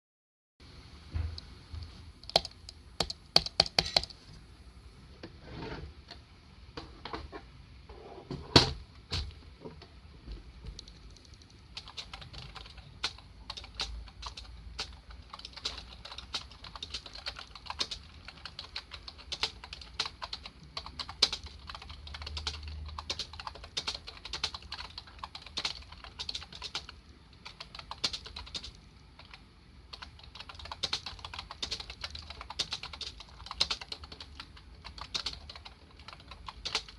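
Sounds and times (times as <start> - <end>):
computer keyboard typing: 2.3 - 4.2, 10.8 - 36.9.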